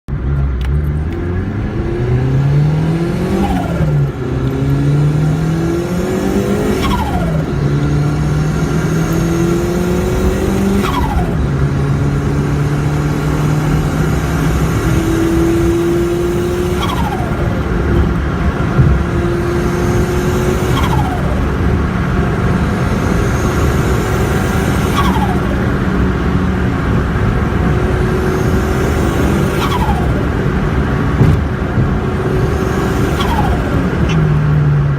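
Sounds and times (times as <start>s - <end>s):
car engine revving: 0.1s - 34.9s
turbo flutter and whistle: 20.4s - 21.5s, 24.2s - 25.7s, 29.1s - 30.2s.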